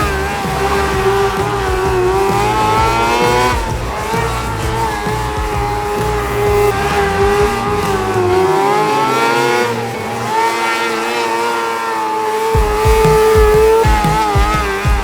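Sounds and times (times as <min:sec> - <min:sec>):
race car engines revving: 0:00.0 - 0:15.0.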